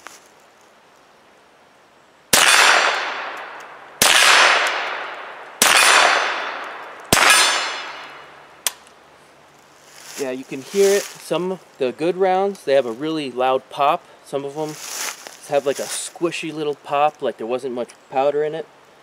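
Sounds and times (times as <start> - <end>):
rifle shots: 2.3 - 8.3
steel target ringing clang: 5.6 - 8.3.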